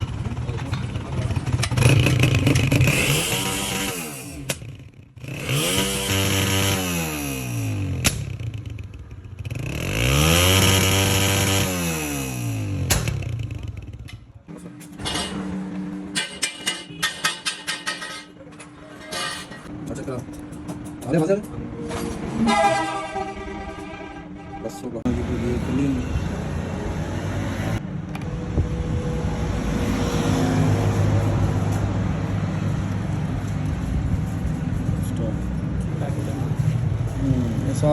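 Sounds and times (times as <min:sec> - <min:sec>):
motorcycle engine revving: 0:00.0 - 0:14.3
exhaust backfire pops: 0:08.0 - 0:08.5, 0:12.8 - 0:13.4.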